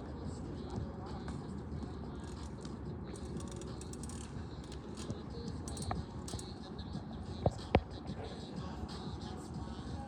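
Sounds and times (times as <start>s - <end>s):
bike hub ratchet clicking: 2.2s - 6.6s.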